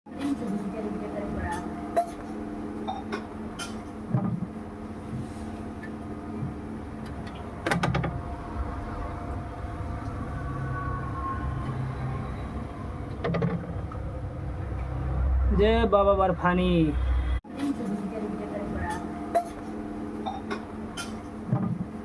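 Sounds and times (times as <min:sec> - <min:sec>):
traffic rumble: 0:07.1 - 0:17.4.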